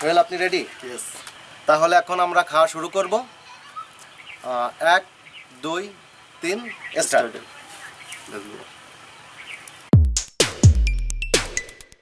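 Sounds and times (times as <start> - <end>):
electronic music with heavy bass drum: 9.9 - 12.0.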